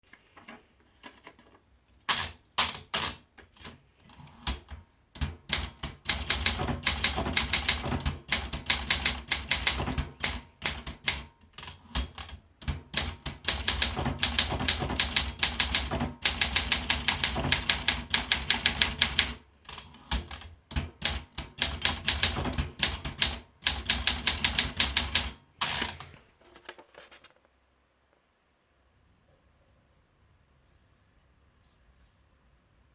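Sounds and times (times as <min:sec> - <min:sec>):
manual typewriter keystrokes: 0:02.1 - 0:26.2.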